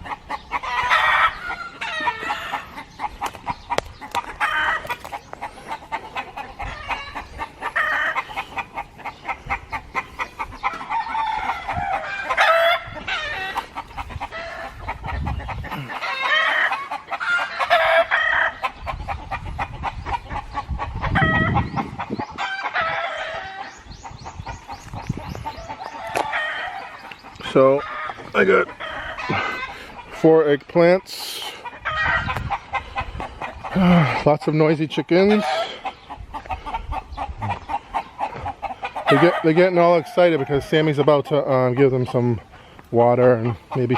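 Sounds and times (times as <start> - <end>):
chickens clucking and squawking: 0.0 - 43.9
rooster crowing: 25.6 - 27.0.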